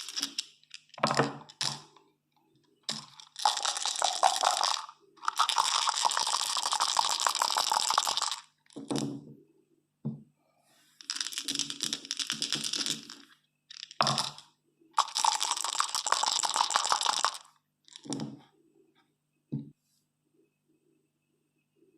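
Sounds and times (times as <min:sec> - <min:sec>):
dice knocking down: 0:00.0 - 0:02.0, 0:07.2 - 0:09.2, 0:11.0 - 0:14.5, 0:15.5 - 0:18.4
dice rattling: 0:00.0 - 0:02.0, 0:02.9 - 0:09.1, 0:11.0 - 0:18.4.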